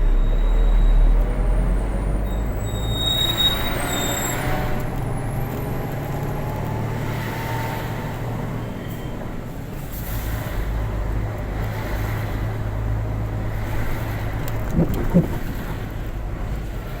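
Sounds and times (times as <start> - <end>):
truck engine running: 3.8 - 17.0.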